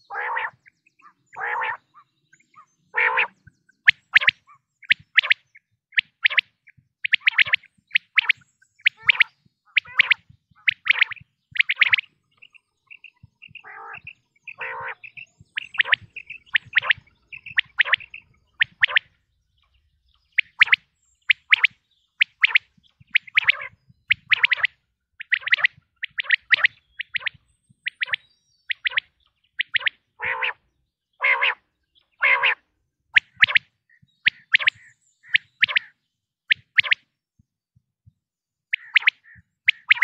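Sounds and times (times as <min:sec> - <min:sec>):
quail rasping call: 0:00.0 - 0:00.7, 0:01.3 - 0:02.1, 0:03.0 - 0:03.4, 0:07.1 - 0:12.1, 0:13.1 - 0:19.1, 0:20.4 - 0:30.6, 0:31.2 - 0:31.6, 0:32.2 - 0:32.6, 0:38.7 - 0:40.0
quail chirping: 0:00.0 - 0:32.6, 0:33.2 - 0:37.0, 0:38.7 - 0:40.0.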